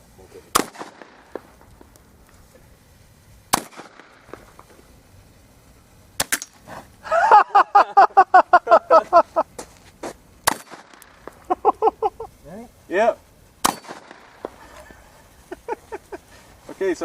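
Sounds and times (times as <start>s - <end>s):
shotgun shots: 0.5s - 1.6s, 3.5s - 4.6s, 6.2s - 6.5s, 10.4s - 11.3s, 13.6s - 14.6s.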